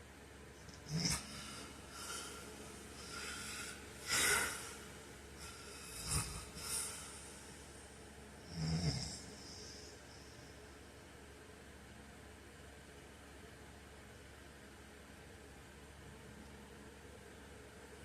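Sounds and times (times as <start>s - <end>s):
faint steady hiss: 0.0s - 18.0s
man snoring: 0.7s - 7.5s, 8.4s - 9.9s.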